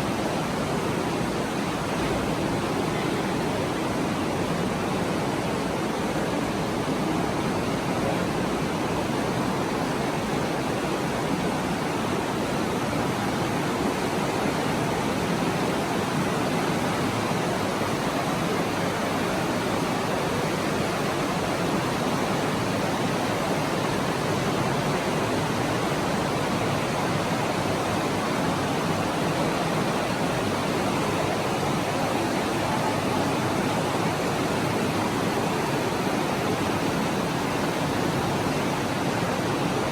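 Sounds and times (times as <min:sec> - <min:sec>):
water rushing: 0:00.0 - 0:39.9.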